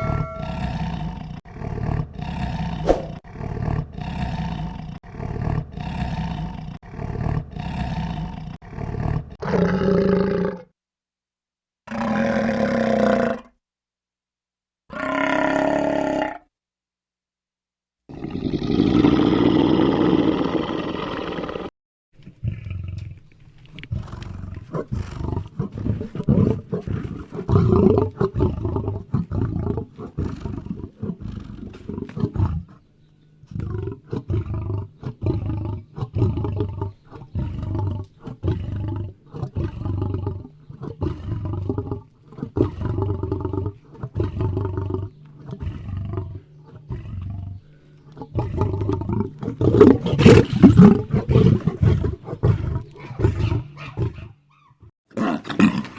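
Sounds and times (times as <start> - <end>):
lion roaring: 33.5 - 54.4.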